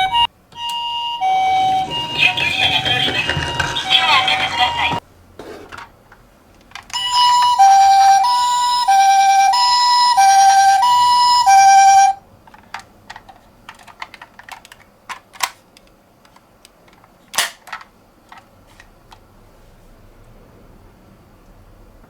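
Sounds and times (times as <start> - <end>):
toy two-tone siren: 0.0 - 5.0, 7.0 - 12.2.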